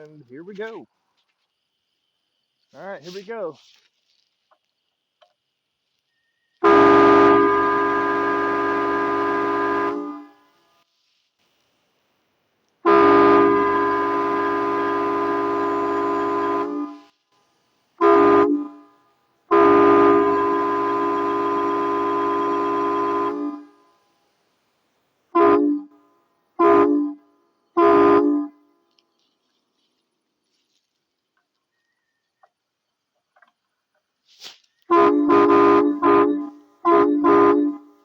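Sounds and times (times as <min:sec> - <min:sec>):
train horn blasts: 0:06.6 - 0:10.7, 0:12.8 - 0:17.1, 0:18.0 - 0:24.1, 0:25.3 - 0:28.7, 0:34.8 - 0:38.0.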